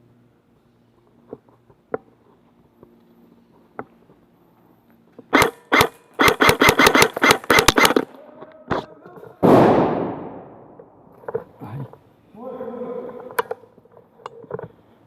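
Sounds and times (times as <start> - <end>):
airsoft guns firing: 5.3 - 8.1, 9.4 - 10.8.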